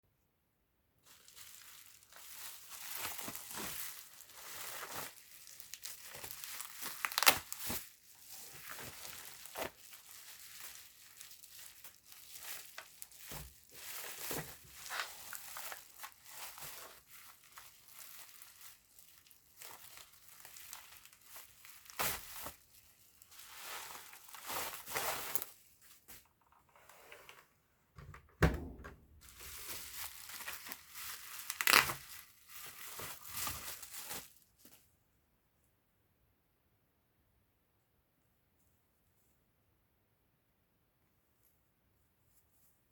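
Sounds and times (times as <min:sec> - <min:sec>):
packaging crinkling and rustling: 0:01.0 - 0:27.4, 0:28.0 - 0:34.8.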